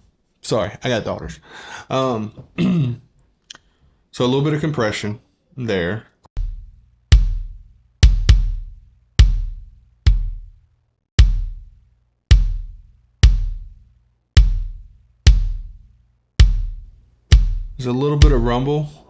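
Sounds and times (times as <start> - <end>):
kick drum hits: 6.4 - 10.6, 11.2 - 18.7.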